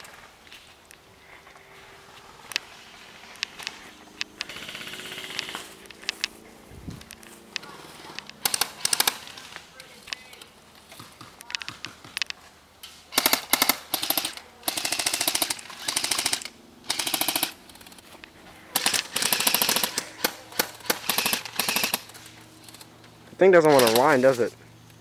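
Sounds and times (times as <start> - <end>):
airsoft guns firing bursts: 4.4 - 5.8, 8.4 - 9.6, 13.1 - 17.6, 18.7 - 22.2, 23.6 - 24.2.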